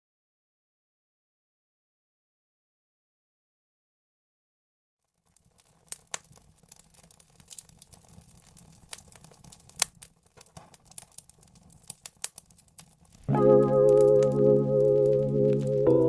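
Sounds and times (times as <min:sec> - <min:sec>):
vinyl record crackles and pops: 0:05.0 - 0:16.0.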